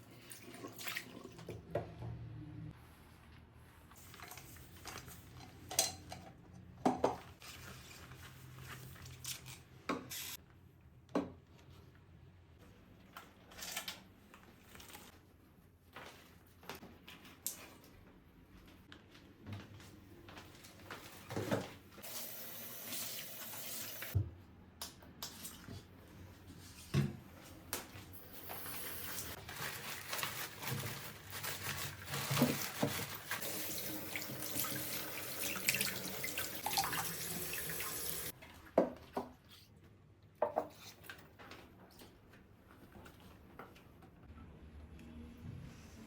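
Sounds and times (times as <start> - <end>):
tap water running into sink: 33.4 - 38.3.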